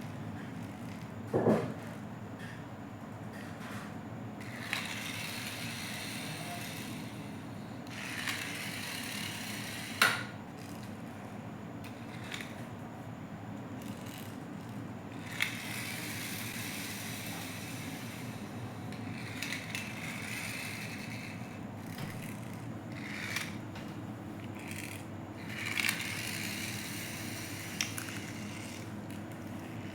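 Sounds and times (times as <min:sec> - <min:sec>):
steady low hum: 0:00.0 - 0:29.9
toy wheels rolling on hard surface: 0:00.2 - 0:01.1, 0:04.4 - 0:11.2, 0:11.8 - 0:12.7, 0:13.8 - 0:23.8, 0:24.4 - 0:29.9
plastic knocks: 0:01.3 - 0:01.8.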